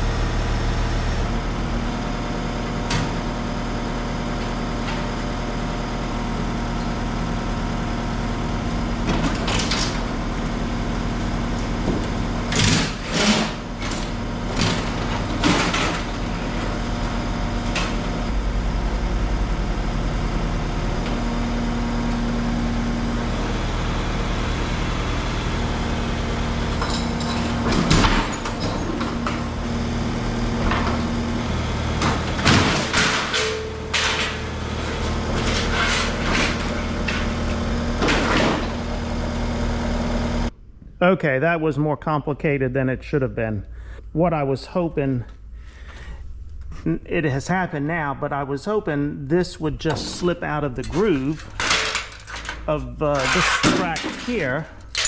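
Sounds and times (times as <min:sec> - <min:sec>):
engine idling: 0:00.0 - 0:40.6
metallic knocks and clanks: 0:32.0 - 0:37.4, 0:49.8 - 0:55.0.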